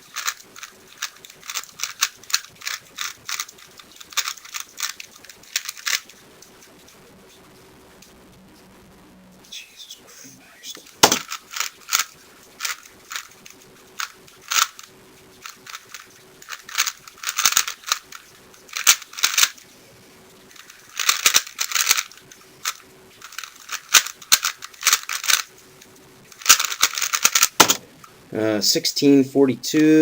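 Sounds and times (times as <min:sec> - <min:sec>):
puzzle cube clicking and clacking: 0:00.0 - 0:06.8, 0:10.7 - 0:19.6, 0:20.5 - 0:25.5, 0:26.3 - 0:27.9.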